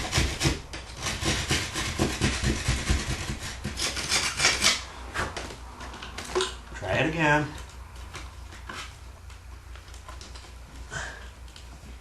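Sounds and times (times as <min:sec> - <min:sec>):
drywall saw rasping: 0:00.0 - 0:05.4.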